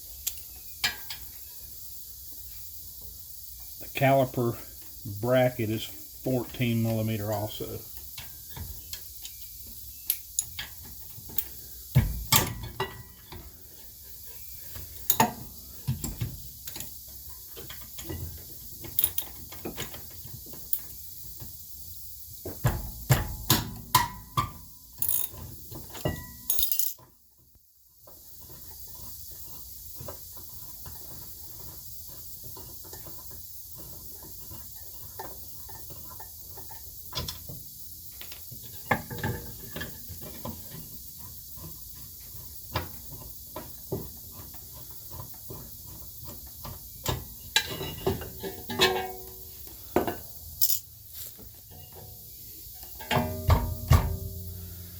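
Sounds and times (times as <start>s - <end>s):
metal clanking: 46.6s - 50.9s, 51.7s - 54.8s.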